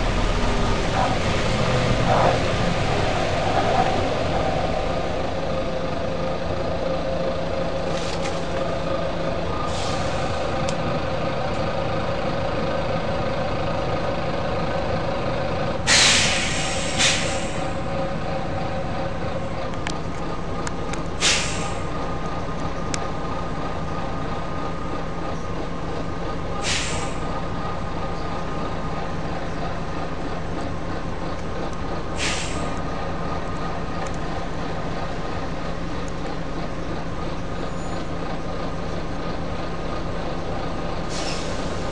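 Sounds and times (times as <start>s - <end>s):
bus diesel engine running: 0.0s - 41.9s
compressed air hisses: 15.9s - 17.6s, 21.2s - 21.8s, 26.6s - 27.1s, 32.2s - 32.7s, 41.1s - 41.8s.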